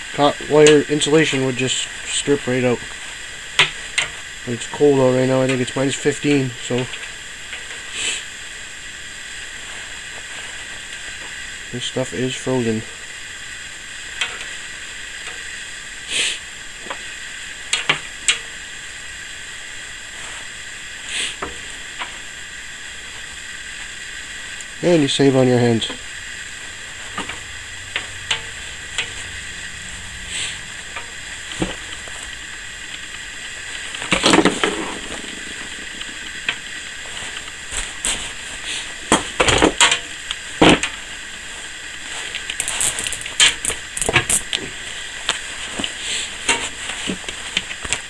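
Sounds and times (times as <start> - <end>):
faint hiss: 0.0 - 48.0
wire stripper scraping and clicking: 42.3 - 44.6.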